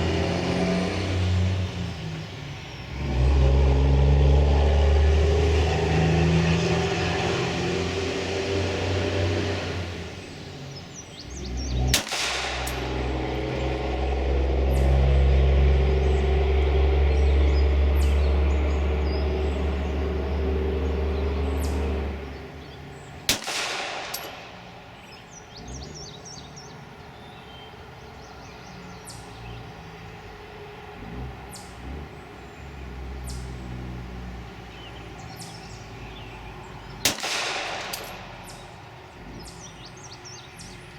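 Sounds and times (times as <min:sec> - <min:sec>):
pistol shots: 0:11.9 - 0:13.8, 0:23.3 - 0:25.2, 0:37.0 - 0:38.8.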